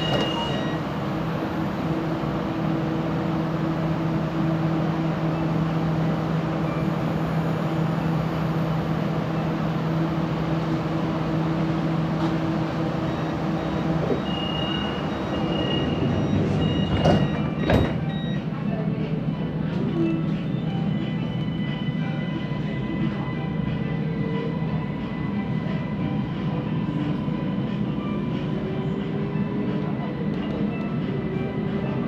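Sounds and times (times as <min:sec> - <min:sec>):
train wheels rolling on rails: 0:10.5 - 0:18.5.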